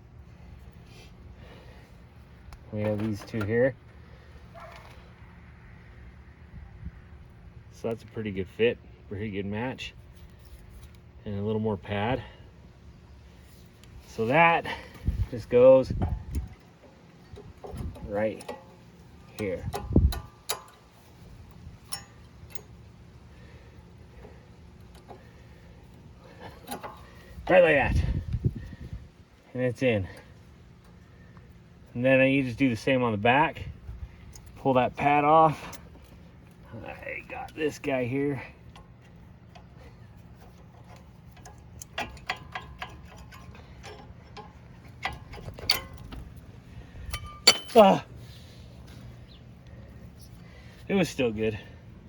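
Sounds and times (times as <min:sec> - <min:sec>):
metallic clicks of brake pad: 0:15.8 - 0:27.5, 0:38.6 - 0:47.9
light metallic clicks: 0:17.3 - 0:20.9.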